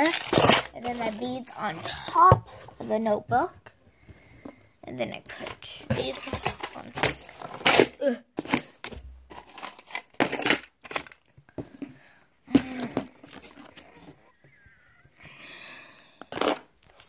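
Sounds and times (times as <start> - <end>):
plastic crinkling: 0.0 - 1.8
objects knocking and clattering: 5.3 - 14.2.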